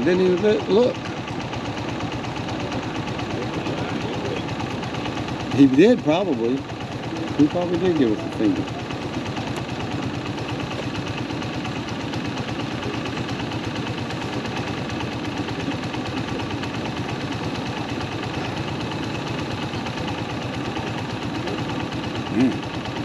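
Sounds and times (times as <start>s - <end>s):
motorcycle engine idling: 0.0s - 23.0s.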